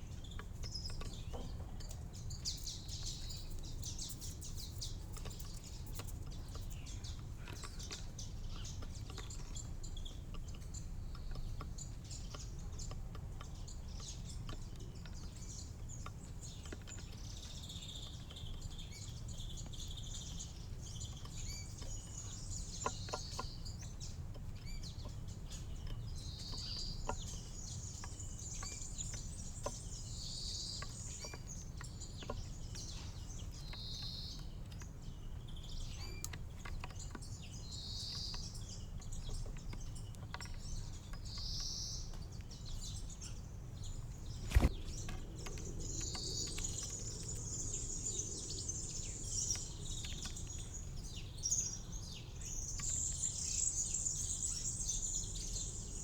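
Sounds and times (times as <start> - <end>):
small birds chirping: 0.0 - 56.0
low background rumble: 42.5 - 52.2.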